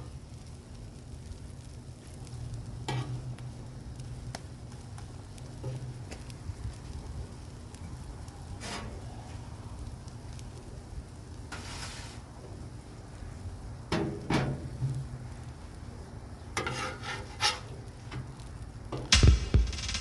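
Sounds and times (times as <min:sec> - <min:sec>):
faint sizzle: 0:00.0 - 0:20.0
music with a beat: 0:19.1 - 0:20.0.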